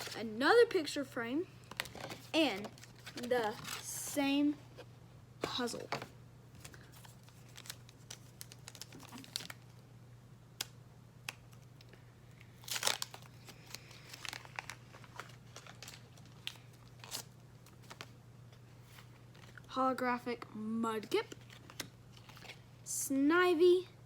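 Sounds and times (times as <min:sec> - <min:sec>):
plastic wrapper crinkling and tearing: 0:01.6 - 0:03.9, 0:06.6 - 0:09.8, 0:12.4 - 0:18.2, 0:18.9 - 0:19.7, 0:21.3 - 0:22.6.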